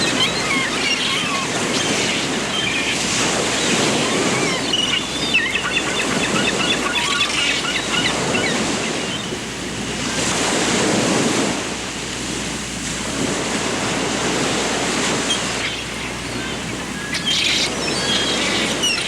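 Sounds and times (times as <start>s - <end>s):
surf washing in: 0.0s - 19.0s
small birds chirping: 15.3s - 19.0s.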